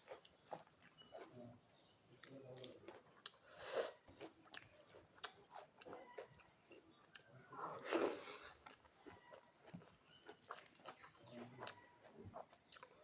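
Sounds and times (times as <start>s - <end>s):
person chewing food: 0.0s - 13.0s.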